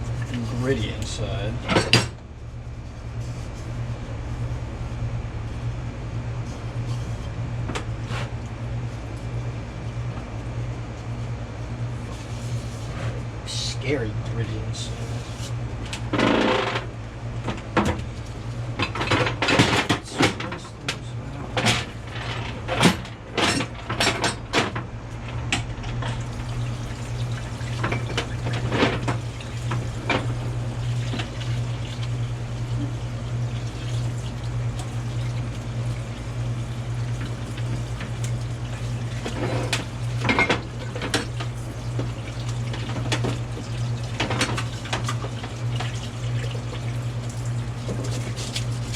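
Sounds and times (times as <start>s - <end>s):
steady low hum: 0.0s - 48.9s.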